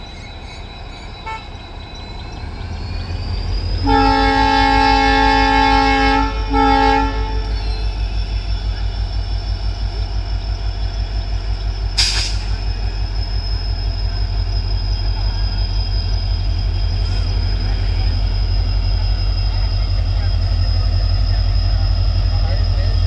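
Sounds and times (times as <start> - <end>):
locomotive engine droning: 0.0 - 23.0
locomotive horn: 1.2 - 1.5, 3.8 - 7.7
brief hiss: 12.0 - 12.7.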